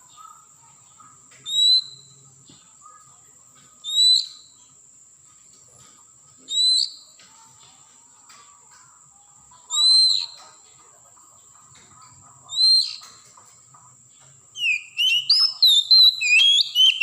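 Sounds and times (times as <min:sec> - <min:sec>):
bird whistling song: 0:01.4 - 0:02.2, 0:03.8 - 0:04.6, 0:06.5 - 0:07.2, 0:09.7 - 0:10.4, 0:12.5 - 0:13.2, 0:14.5 - 0:17.0.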